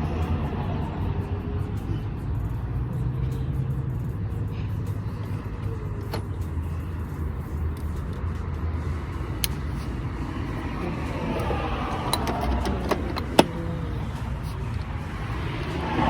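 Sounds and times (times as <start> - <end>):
vehicle engines rumbling: 0.0 - 16.0
wrench clicking on metal: 11.4 - 13.8.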